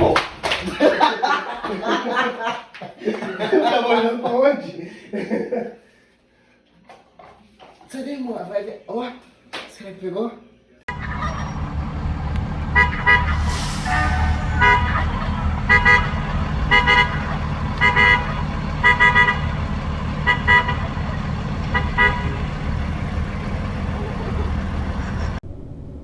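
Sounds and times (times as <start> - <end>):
high-pitched toots: 10.9 - 19.6.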